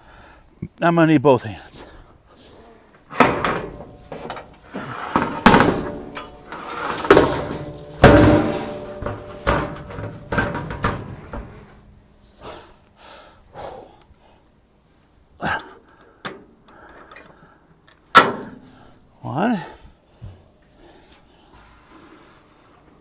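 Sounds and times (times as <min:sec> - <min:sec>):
sheet metal banging and clanking: 0:03.1 - 0:12.1.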